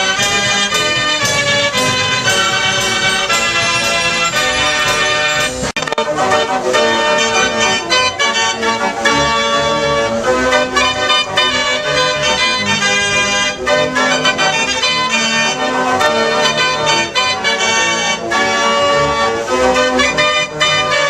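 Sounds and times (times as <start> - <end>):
fairground organ music: 0.0 - 21.0.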